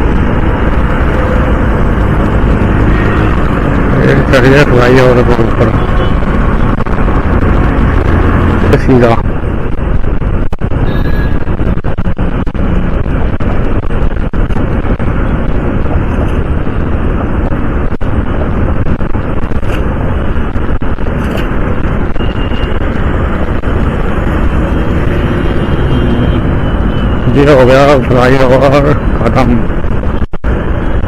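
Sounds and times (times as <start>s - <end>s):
motorcycle engine: 0.0s - 8.7s, 22.0s - 27.3s
road noise: 0.0s - 31.0s
wind rush on microphone: 0.0s - 31.0s.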